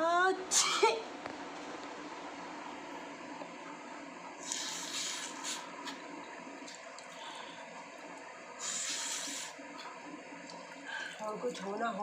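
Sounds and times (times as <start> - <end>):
person blowing congested nose: 4.4 - 5.7.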